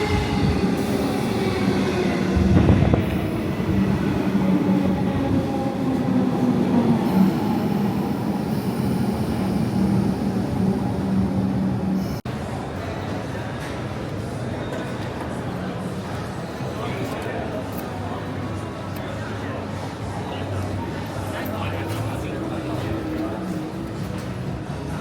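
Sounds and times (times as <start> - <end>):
train rumbling: 0.0 - 12.2.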